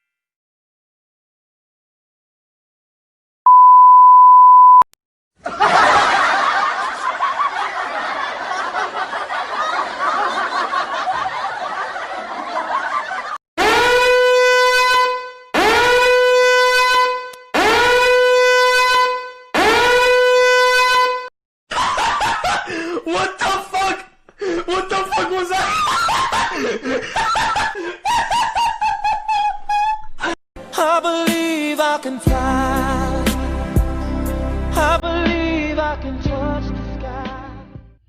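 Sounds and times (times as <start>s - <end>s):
censor beep: 3.5s - 4.9s
horn-like blasts: 13.6s - 21.3s.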